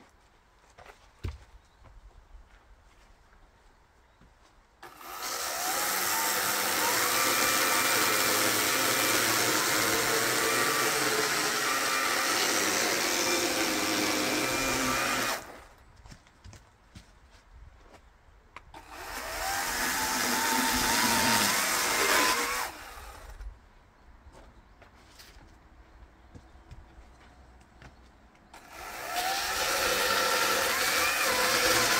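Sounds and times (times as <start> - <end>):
power saw cutting logs: 4.8 - 15.8, 18.7 - 23.4, 28.5 - 31.9.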